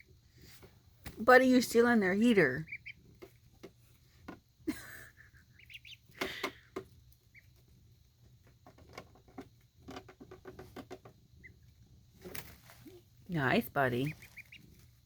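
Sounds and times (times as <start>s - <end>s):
ducklings peeping: 1.2s - 4.3s, 4.9s - 7.9s, 11.4s - 11.8s, 12.9s - 15.0s.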